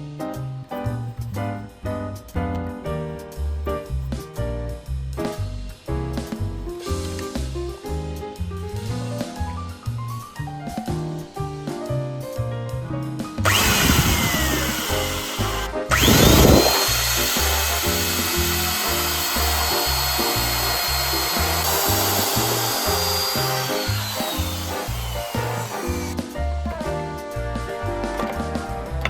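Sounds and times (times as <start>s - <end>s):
background music: 0.0s - 29.0s
electric drill boring into wood: 13.4s - 26.2s.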